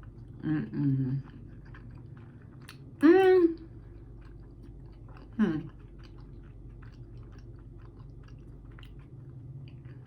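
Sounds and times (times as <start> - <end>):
wet chewing mouth clicks: 1.2 - 2.9, 3.9 - 10.0.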